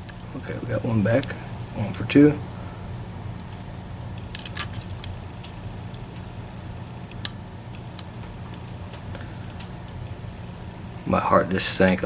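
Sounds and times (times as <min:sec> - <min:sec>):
steady low hum: 0:00.0 - 0:12.0
lock picks clicking in lock: 0:04.2 - 0:05.2.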